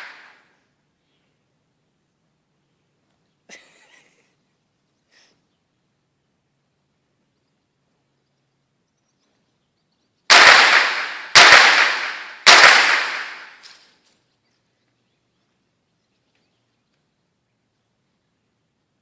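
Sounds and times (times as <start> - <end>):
blank pistol shots echoing: 0.0 - 0.4, 10.3 - 13.7.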